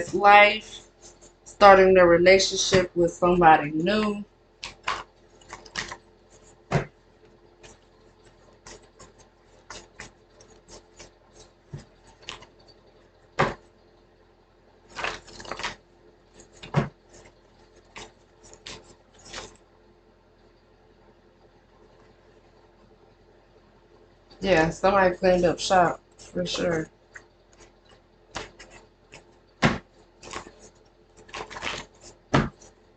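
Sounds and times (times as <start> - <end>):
cards shuffling: 4.6 - 6.9, 14.9 - 15.8, 16.4 - 17.3, 17.9 - 19.6, 28.4 - 32.8.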